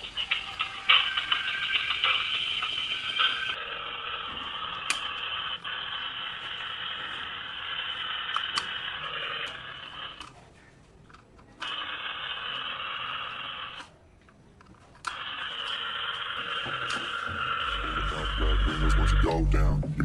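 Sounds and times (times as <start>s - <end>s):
toy motor and gears whirring: 0.0s - 10.3s, 11.6s - 13.9s, 15.0s - 17.7s.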